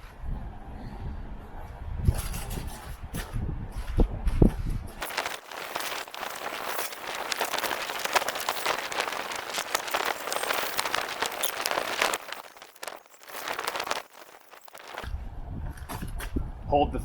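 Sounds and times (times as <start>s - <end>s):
plastic shrink wrap crinkling: 5.0s - 15.1s.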